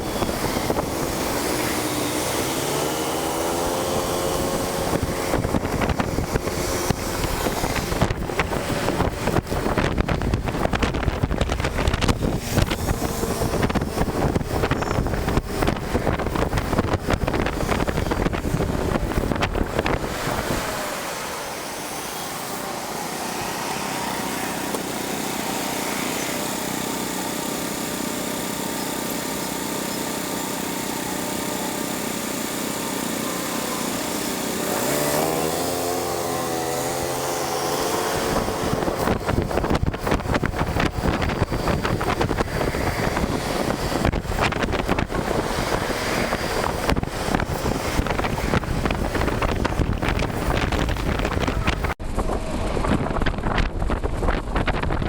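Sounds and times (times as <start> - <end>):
wind buffeting microphone: 0.0 - 28.6, 30.7 - 55.0
road noise: 0.0 - 55.0.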